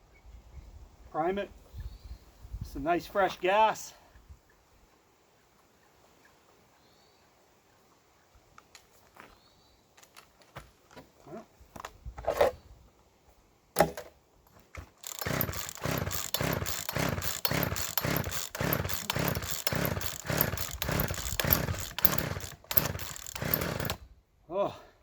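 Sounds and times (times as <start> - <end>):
chainsaw starting clicks and knocks: 13.8 - 24.0
chainsaw engine running roughly: 14.8 - 24.0.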